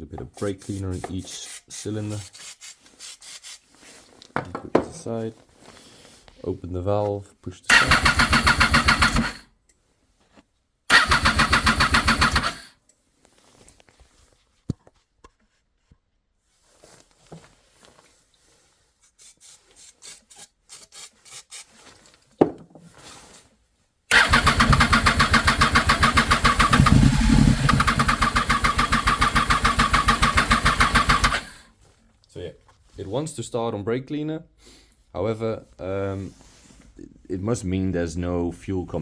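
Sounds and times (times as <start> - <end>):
motorcycle engine cranking: 7.7 - 9.4, 10.9 - 12.7, 24.1 - 31.6.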